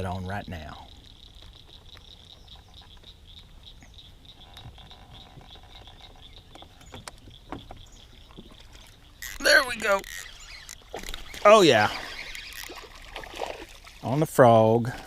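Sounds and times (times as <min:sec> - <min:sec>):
high pulsing animal trill: 0:09.2 - 0:12.8.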